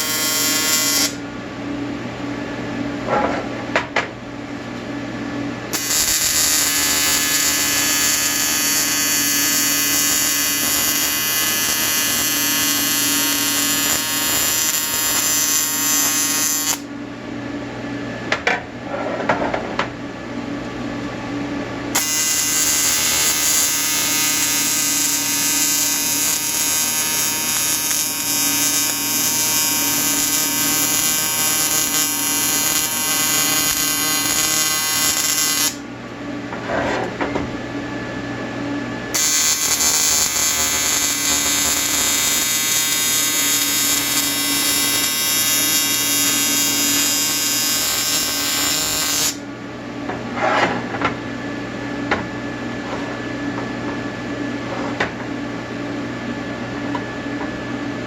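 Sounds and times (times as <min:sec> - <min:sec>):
welding arc buzzing: 0:00.0 - 0:01.2, 0:05.7 - 0:16.9, 0:22.0 - 0:35.8, 0:39.1 - 0:49.4
low machine hum: 0:00.0 - 0:58.0.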